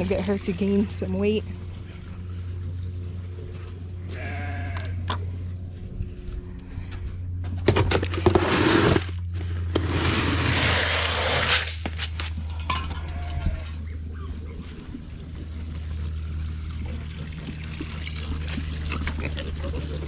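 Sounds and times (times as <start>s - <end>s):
low hum: 0.0s - 20.0s
sheep bleating: 4.0s - 5.0s, 13.0s - 13.7s.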